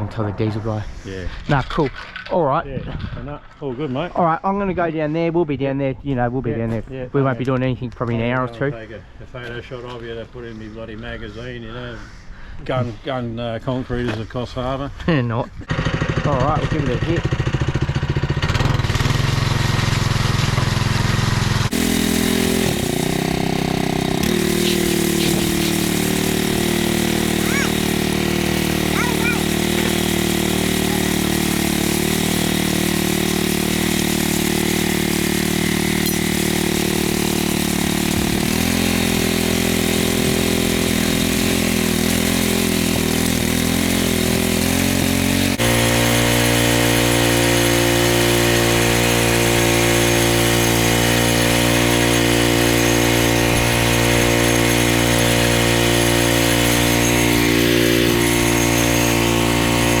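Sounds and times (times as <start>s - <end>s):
power trowel engine running: 15.6s - 60.0s.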